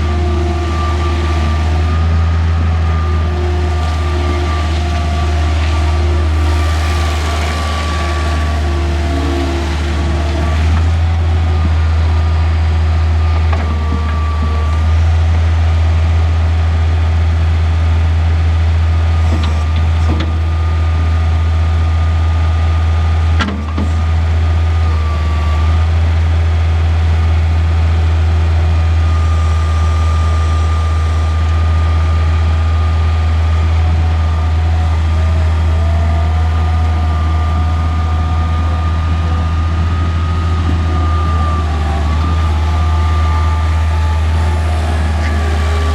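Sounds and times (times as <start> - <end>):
high whine: 0.0 - 15.2, 33.7 - 45.9
skid steer engine droning: 0.0 - 45.9.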